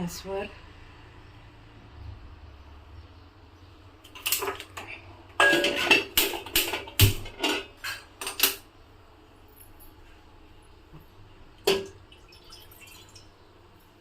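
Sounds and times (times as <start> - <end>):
metal cookware clattering: 4.1 - 8.6, 11.6 - 12.0.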